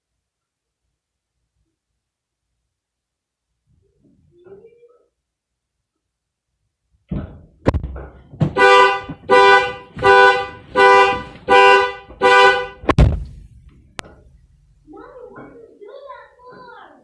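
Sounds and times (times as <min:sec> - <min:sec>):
car horn honking: 0:08.4 - 0:13.0
sharp loud knock: 0:12.8 - 0:13.4.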